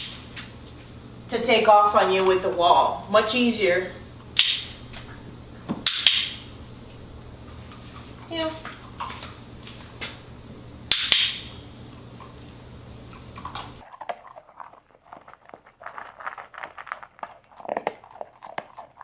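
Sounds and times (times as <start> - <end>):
steady low hum: 0.0 - 18.9
puppy crunching kibble: 7.4 - 10.3, 11.9 - 19.0.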